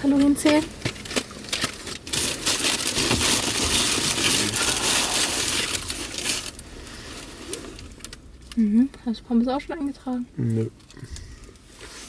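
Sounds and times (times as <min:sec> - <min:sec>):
food packaging rustling: 0:00.0 - 0:08.6.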